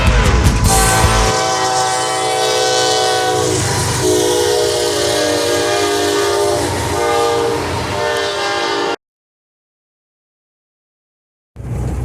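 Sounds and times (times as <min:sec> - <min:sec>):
locomotive air horn blasts: 0:00.0 - 0:09.0
train rumbling: 0:00.0 - 0:09.0, 0:11.6 - 0:12.0.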